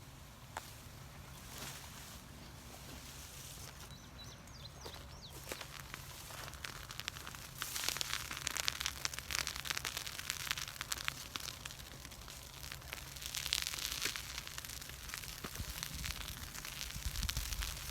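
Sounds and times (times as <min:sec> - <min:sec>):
faint bird chirps: 0:03.6 - 0:06.4
wood fire crackling and popping: 0:04.8 - 0:17.9.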